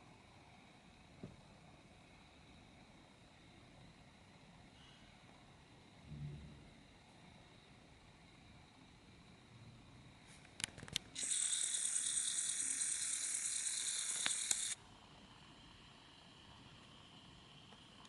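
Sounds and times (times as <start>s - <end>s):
small clicks: 10.5s - 14.8s
lens zoom motor whirring: 11.0s - 14.8s.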